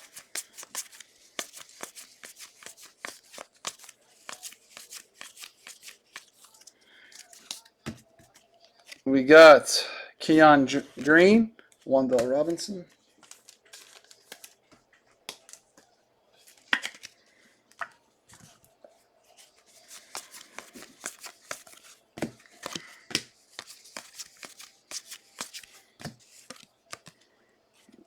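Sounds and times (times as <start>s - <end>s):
trading cards sliding by hand: 19.4s - 27.2s.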